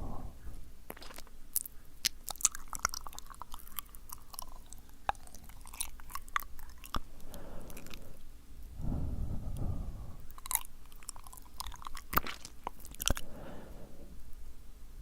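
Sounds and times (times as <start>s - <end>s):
lip smacks: 0.5s - 8.3s, 9.5s - 13.4s
tongue clicks: 0.9s - 8.1s, 10.3s - 13.3s.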